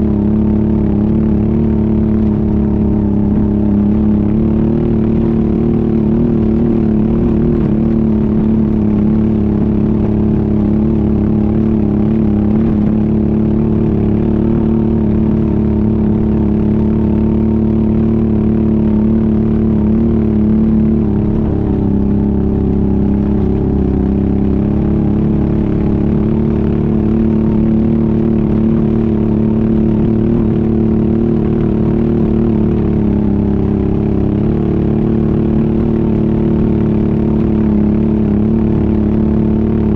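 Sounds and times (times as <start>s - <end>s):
quad bike engine running: 0.0s - 39.9s.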